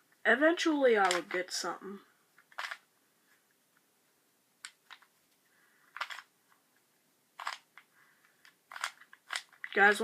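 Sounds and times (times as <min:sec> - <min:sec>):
puzzle cube plastic clicks: 0:00.9 - 0:01.7, 0:02.4 - 0:02.9, 0:04.6 - 0:06.6, 0:07.3 - 0:10.0.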